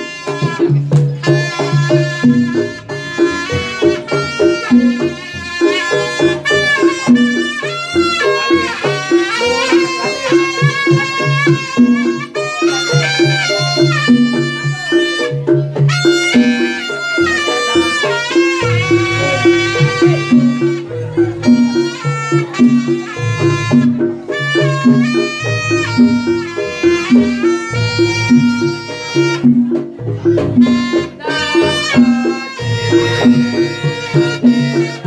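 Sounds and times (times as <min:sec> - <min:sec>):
drums: 0:00.0 - 0:35.0
shrill reed wind instrument melody: 0:00.0 - 0:35.0
low gong-like notes: 0:18.6 - 0:21.5.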